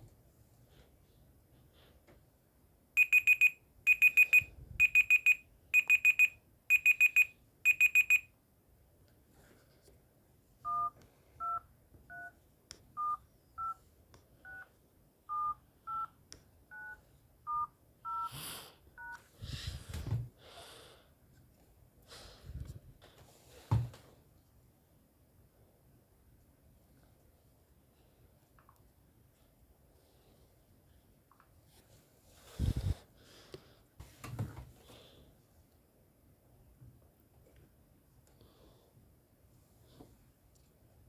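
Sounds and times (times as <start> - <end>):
keypad tones: 3.0 - 8.3, 10.6 - 12.4, 13.0 - 13.8, 15.3 - 16.1, 16.7 - 18.3
short high electronic beeps: 3.0 - 8.3.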